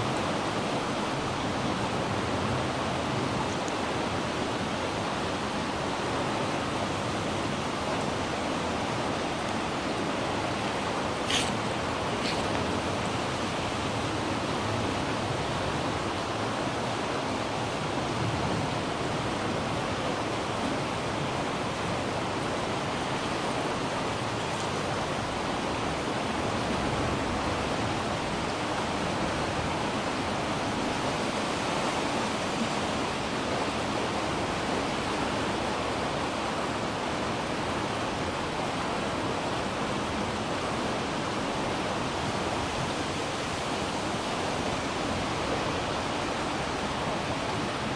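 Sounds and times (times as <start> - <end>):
floodwater rushing in a creek: 0.0 - 47.9.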